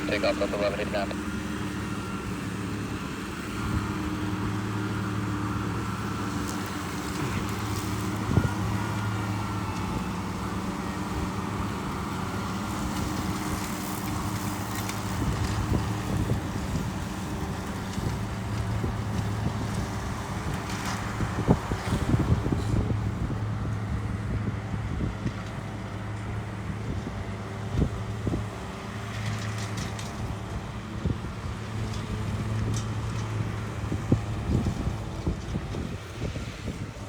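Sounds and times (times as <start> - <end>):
low engine hum: 0.0 - 37.0
wind buffeting microphone: 3.0 - 12.1, 12.7 - 25.4, 26.0 - 28.6, 30.2 - 37.0.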